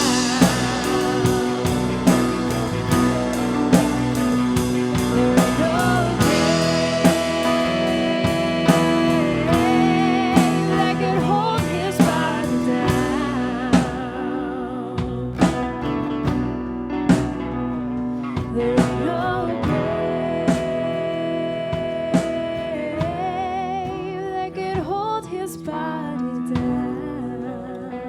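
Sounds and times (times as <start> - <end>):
steady drum beat: 0.0 - 14.3
person singing long notes: 0.0 - 15.4
guitar chords: 0.0 - 28.0.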